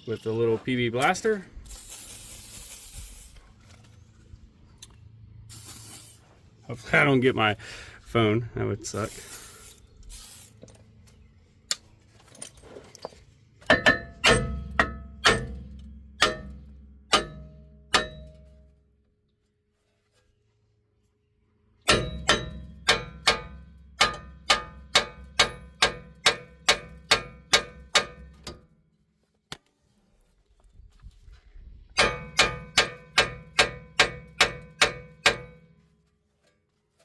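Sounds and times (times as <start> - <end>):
hammer striking metal rotor: 13.7 - 18.4, 21.9 - 28.6, 32.0 - 35.6.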